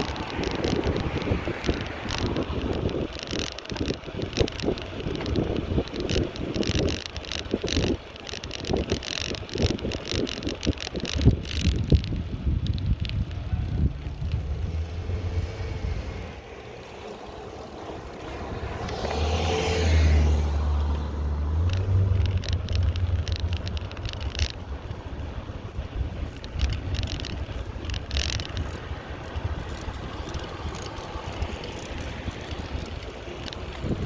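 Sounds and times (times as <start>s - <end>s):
car passing: 0.0s - 3.5s, 13.4s - 25.8s
wind on microphone: 0.0s - 16.4s, 18.0s - 34.0s
bicycle rattling and clicking: 0.0s - 34.0s.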